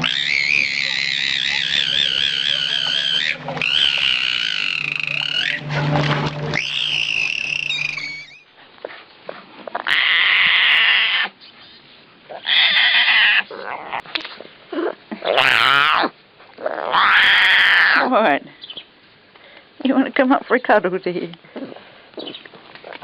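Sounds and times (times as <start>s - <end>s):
harsh animal calls: 0.0s - 8.5s, 9.7s - 11.4s, 12.3s - 14.0s, 15.2s - 18.1s
high wavering animal call: 0.0s - 8.5s.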